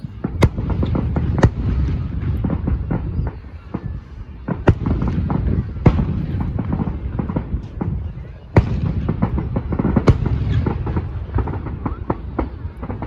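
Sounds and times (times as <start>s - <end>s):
fireworks rumble and crackling: 0.0s - 13.0s
sharp firework bangs: 0.0s - 13.0s.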